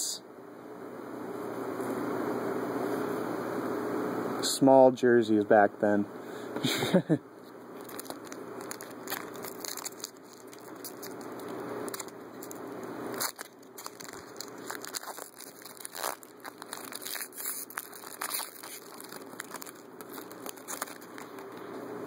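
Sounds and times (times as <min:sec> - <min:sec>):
cards being handled: 0:07.4 - 0:21.8
wrapper crinkling: 0:07.8 - 0:21.8.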